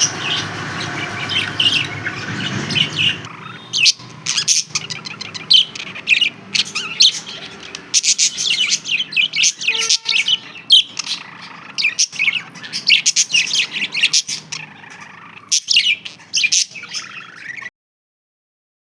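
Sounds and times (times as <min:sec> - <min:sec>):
budgerigars chirping: 0:00.0 - 0:17.7.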